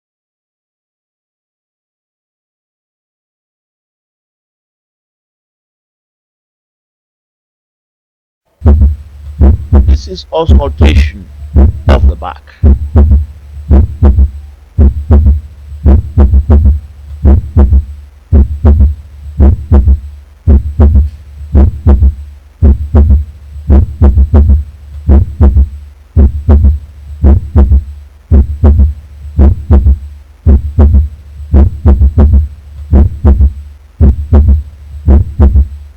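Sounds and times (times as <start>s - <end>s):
heartbeat thumps: 8.6s - 35.8s.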